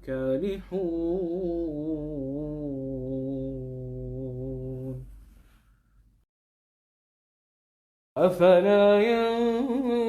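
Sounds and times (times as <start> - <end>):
man chanting: 0.0 - 5.0.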